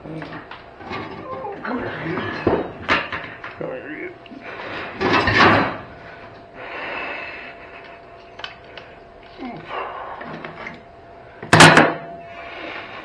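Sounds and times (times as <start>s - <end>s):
handling noises of tools: 0.0s - 3.6s, 4.2s - 6.5s.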